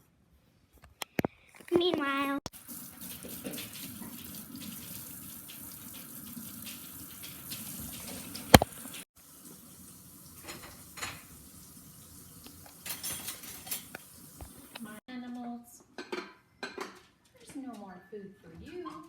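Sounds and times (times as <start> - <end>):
water running: 1.8 - 15.1.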